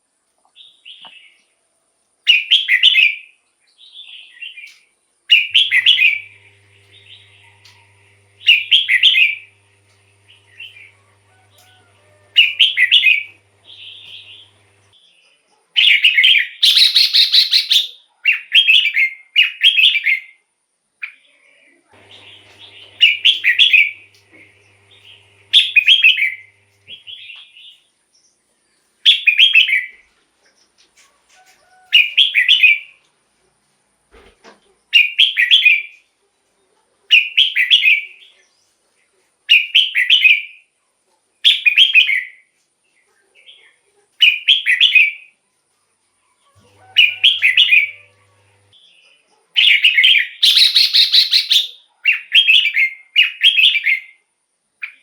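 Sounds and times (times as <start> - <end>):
bulbul singing whistled phrases: 49.8 - 53.8.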